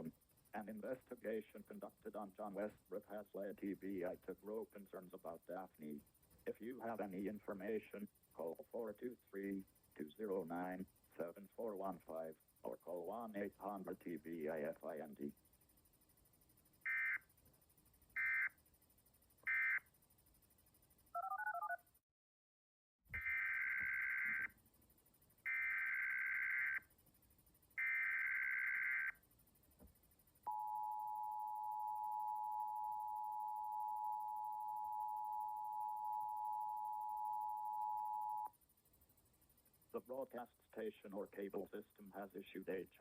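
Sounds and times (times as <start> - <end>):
screeching digital data bursts: 16.8 - 17.3, 18.2 - 18.6, 23.2 - 24.6, 27.8 - 29.2.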